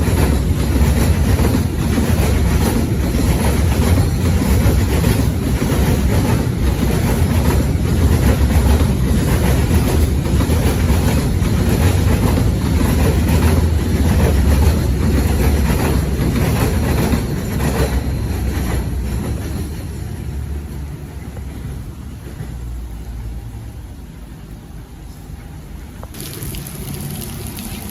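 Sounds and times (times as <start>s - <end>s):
train wheels clacking over rail joints: 0.0s - 20.3s.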